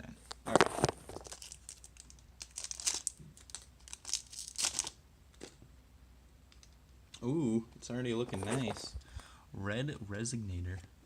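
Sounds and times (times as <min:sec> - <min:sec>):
foil wrapper crinkling and tearing: 0:00.5 - 0:05.0.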